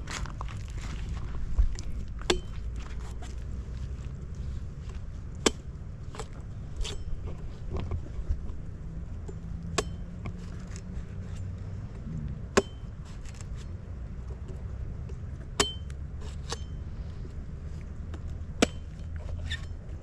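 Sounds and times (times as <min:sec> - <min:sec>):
low steady rumble: 0:00.0 - 0:20.0
machete chopping coconut: 0:02.2 - 0:03.4, 0:05.4 - 0:07.8, 0:09.3 - 0:11.0, 0:12.5 - 0:13.7, 0:15.4 - 0:16.8, 0:18.1 - 0:19.6.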